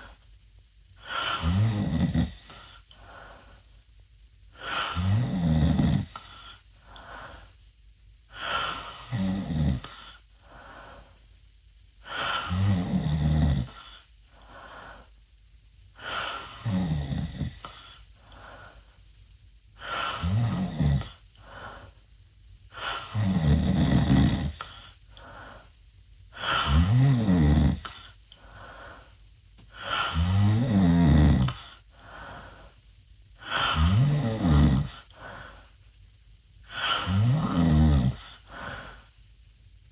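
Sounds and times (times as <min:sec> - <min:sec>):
boy snoring loudly: 0:01.0 - 0:02.7, 0:04.6 - 0:06.4, 0:08.4 - 0:10.1, 0:12.0 - 0:13.9, 0:16.0 - 0:17.8, 0:19.8 - 0:21.2, 0:22.7 - 0:24.7, 0:26.4 - 0:28.0, 0:29.8 - 0:31.7, 0:33.4 - 0:35.1, 0:36.7 - 0:38.3.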